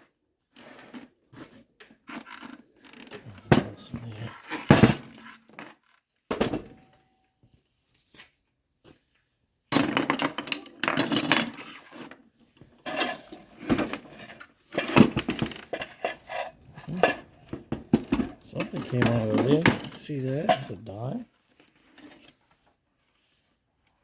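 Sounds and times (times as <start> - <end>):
coins rattling in a coin box: 14.8 - 17.6, 18.7 - 20.9.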